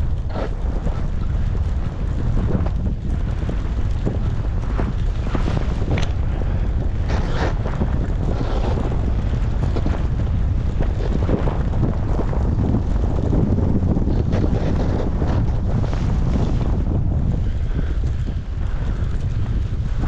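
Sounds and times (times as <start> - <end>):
wind buffeting microphone: 0.0 - 20.0
hissing scrapes: 7.0 - 7.7.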